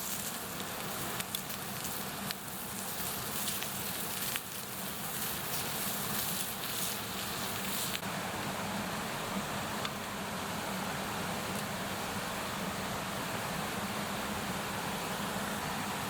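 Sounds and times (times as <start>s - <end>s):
fire crackles and pops: 0.0s - 8.1s, 11.3s - 12.1s
wood fire hissing: 0.0s - 16.0s.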